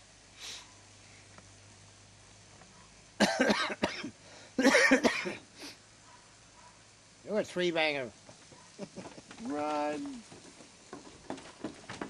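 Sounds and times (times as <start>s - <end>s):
person coughing hard: 3.2s - 5.4s.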